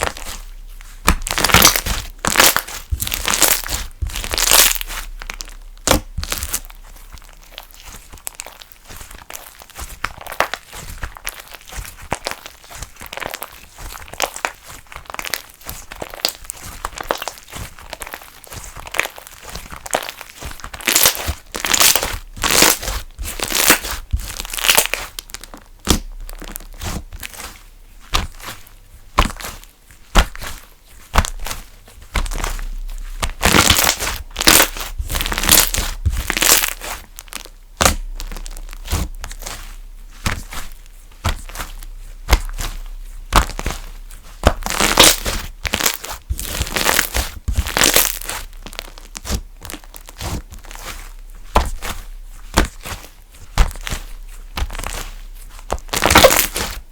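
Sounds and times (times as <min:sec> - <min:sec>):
slime being squeezed by hand: 0:00.0 - 0:56.9.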